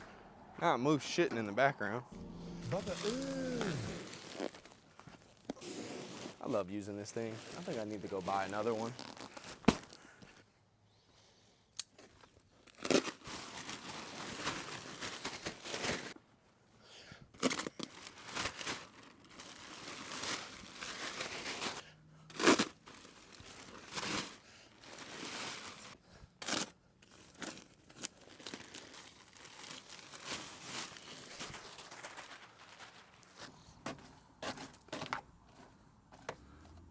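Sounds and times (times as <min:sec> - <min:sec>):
wood mulch rustling and crunching: 0:02.2 - 0:10.0, 0:12.6 - 0:16.2, 0:17.5 - 0:33.7.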